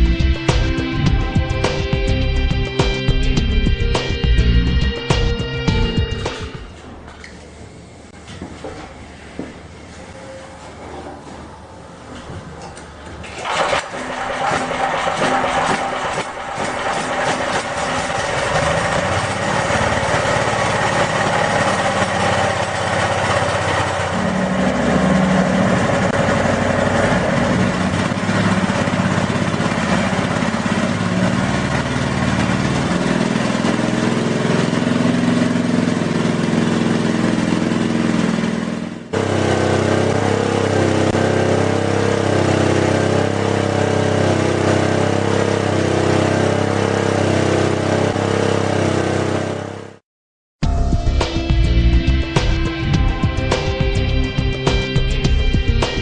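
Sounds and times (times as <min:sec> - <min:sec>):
engine running: 0:13.2 - 0:50.0.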